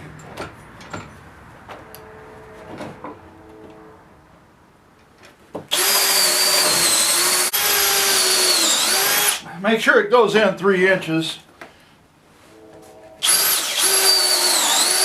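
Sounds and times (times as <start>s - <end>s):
power drill boring into wood: 5.7s - 9.4s, 13.2s - 15.0s.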